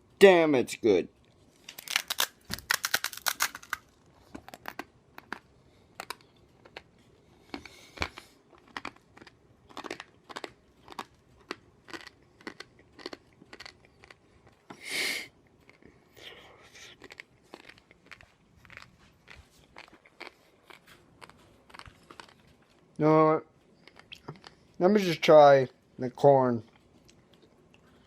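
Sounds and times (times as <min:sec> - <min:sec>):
dry noodles crunched and chewed: 0:01.2 - 0:14.8, 0:15.4 - 0:22.9.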